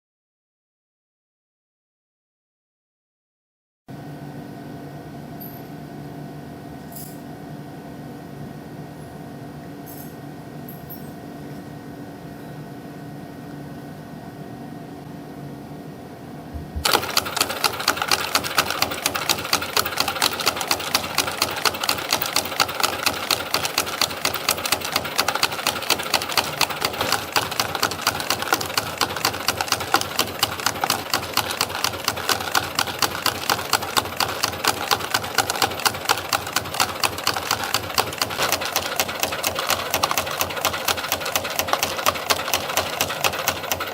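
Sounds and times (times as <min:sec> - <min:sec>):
spring coiling machine clattering: 0:16.8 - 0:43.9.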